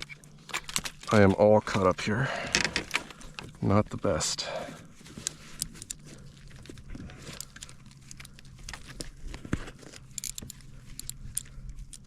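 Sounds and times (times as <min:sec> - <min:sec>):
fishing gear clicks and scrapes: 0:00.0 - 0:03.7, 0:04.9 - 0:12.0
steady low hum: 0:00.0 - 0:12.0.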